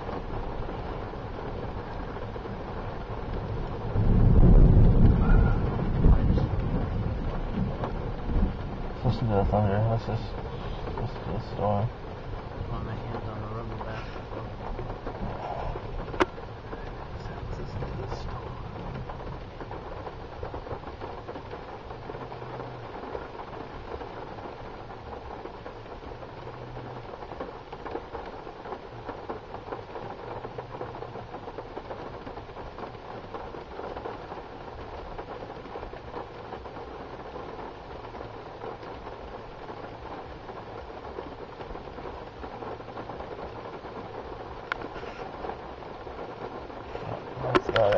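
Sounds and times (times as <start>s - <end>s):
thunder rumble: 0.0s - 22.8s
heavy rain: 0.0s - 47.9s.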